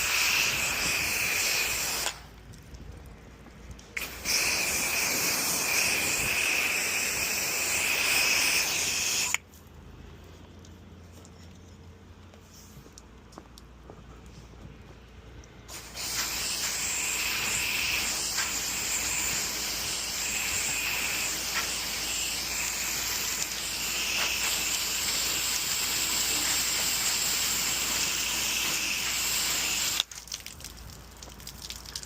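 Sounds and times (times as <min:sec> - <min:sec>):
pressure washer spraying: 0:00.0 - 0:02.3, 0:04.0 - 0:09.4, 0:15.7 - 0:30.1.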